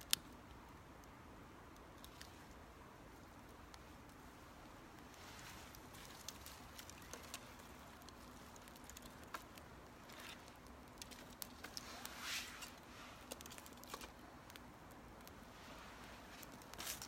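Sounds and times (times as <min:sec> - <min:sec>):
fire crackling: 0:00.0 - 0:17.0
fire popping: 0:00.0 - 0:17.0.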